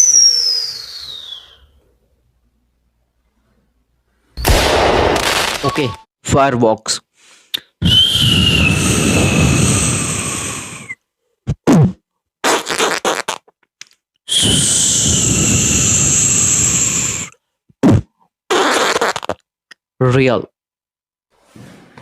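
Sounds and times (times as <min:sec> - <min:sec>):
beatboxer hissing with whistling tone: 0:00.0 - 0:01.8, 0:07.6 - 0:13.4, 0:14.3 - 0:19.4
mouth clicks and pops: 0:07.5 - 0:19.9.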